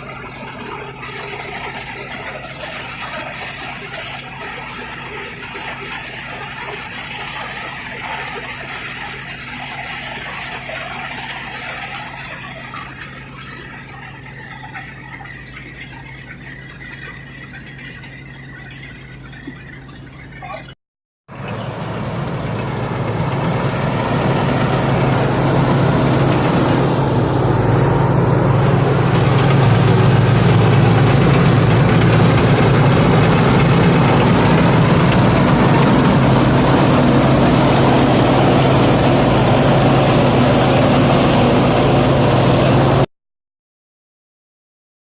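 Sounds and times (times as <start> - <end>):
harvester diesel engine running: 0.0 - 20.6, 21.3 - 43.1
mechanical clatter: 28.5 - 39.1.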